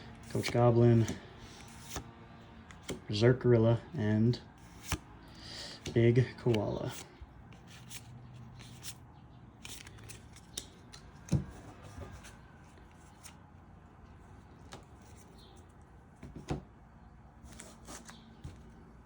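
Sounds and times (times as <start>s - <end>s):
cards and wrappers rustling: 0.1s - 2.0s, 5.8s - 9.0s, 9.6s - 13.4s.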